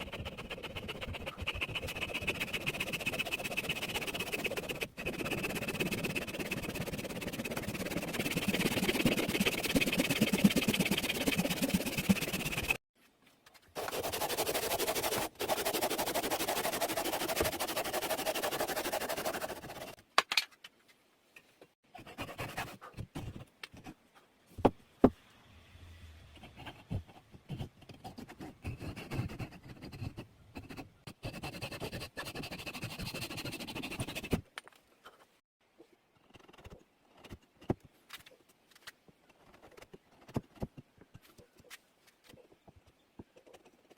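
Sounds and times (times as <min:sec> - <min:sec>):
rasping and scraping on wood: 0:00.0 - 0:12.8, 0:13.8 - 0:20.0, 0:22.0 - 0:23.9, 0:26.4 - 0:34.4.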